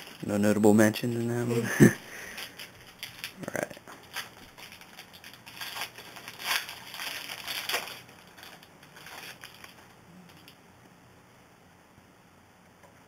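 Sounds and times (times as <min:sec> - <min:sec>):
plastic wrapper tearing and crinkling: 0:00.0 - 0:01.5, 0:02.2 - 0:10.6.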